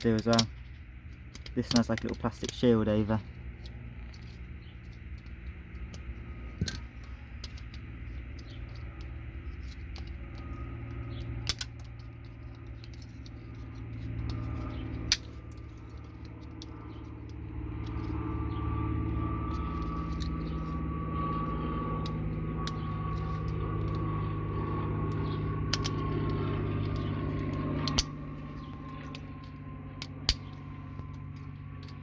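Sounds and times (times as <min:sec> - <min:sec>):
motor hum with whine: 0:00.0 - 0:32.0
small clicks: 0:00.1 - 0:18.2, 0:25.0 - 0:32.0.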